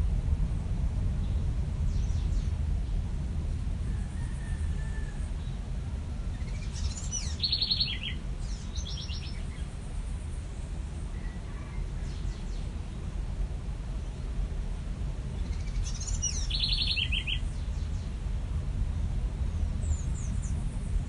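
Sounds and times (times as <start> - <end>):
low background rumble: 0.0 - 21.0
small birds chirping: 6.3 - 10.4, 15.3 - 18.2.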